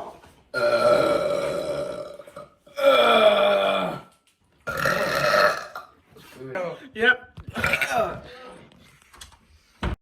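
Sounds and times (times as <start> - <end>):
person burping: 0.5 - 6.0, 7.5 - 8.3.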